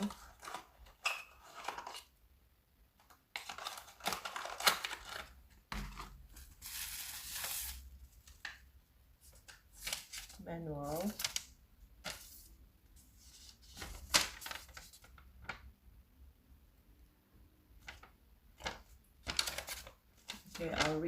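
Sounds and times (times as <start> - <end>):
plastic wrapping rustling: 0.0 - 2.1, 3.4 - 8.6, 9.2 - 15.2, 17.8 - 21.0.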